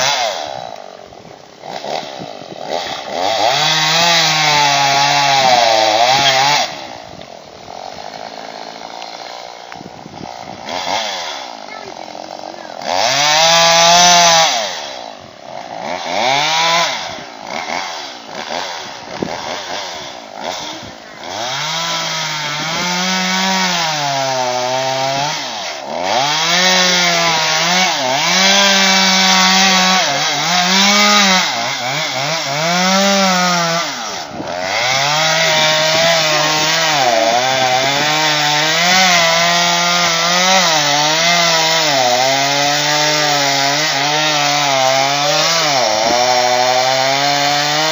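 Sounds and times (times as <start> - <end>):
chainsaw cutting wood: 0.0 - 47.9.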